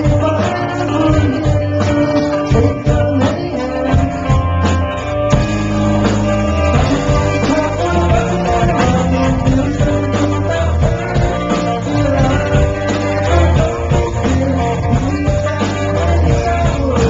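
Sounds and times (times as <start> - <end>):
person singing: 0.0 - 4.6, 6.6 - 17.0
bass guitar: 0.0 - 17.0
drums: 0.0 - 17.0
electric guitar: 0.0 - 17.0.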